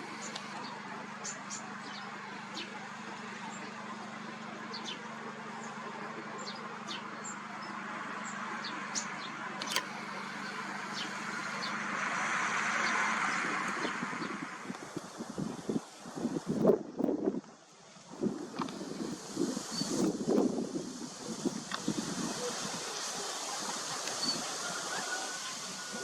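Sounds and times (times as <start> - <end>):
wind blowing across microphone: 9.8 - 26.0.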